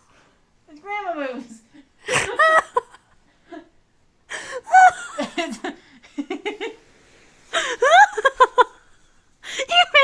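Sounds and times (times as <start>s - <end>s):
person laughing hard: 7.5s - 8.9s.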